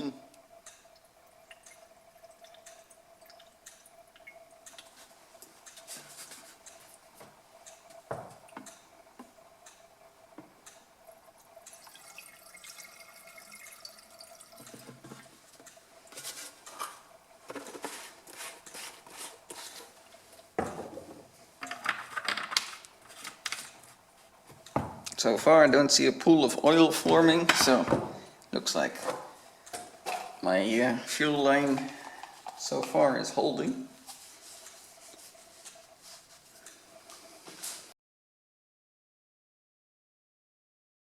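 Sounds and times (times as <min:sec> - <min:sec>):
fuel pouring and dripping: 0:00.3 - 0:22.0, 0:29.4 - 0:37.6.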